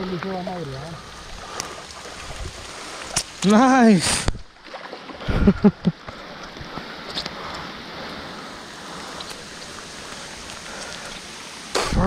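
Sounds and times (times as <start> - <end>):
steady rain falling: 0.0 - 12.0.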